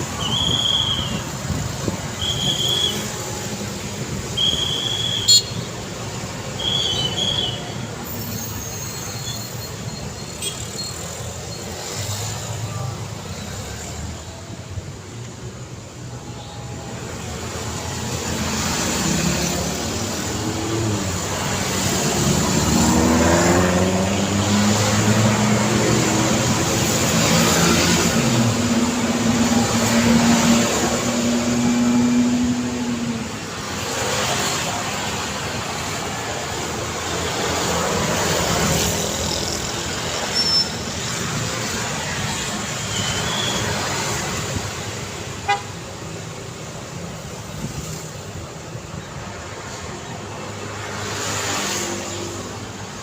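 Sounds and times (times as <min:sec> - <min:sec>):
vehicles passing: 0:00.0 - 0:53.0
short high squeaks: 0:06.6 - 0:11.8, 0:40.2 - 0:41.0.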